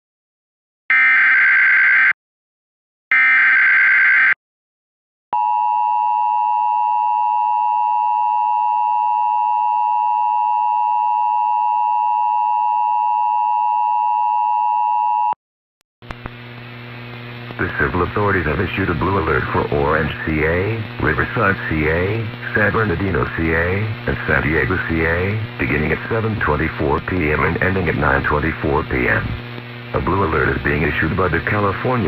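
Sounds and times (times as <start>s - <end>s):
two-tone alarm: 0.9s - 2.2s, 3.1s - 4.4s, 5.4s - 15.4s
low hum: 16.1s - 32.0s.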